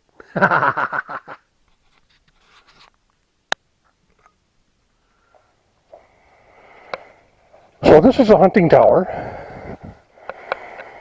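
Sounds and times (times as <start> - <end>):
soft handling noises: 1.6 - 4.4.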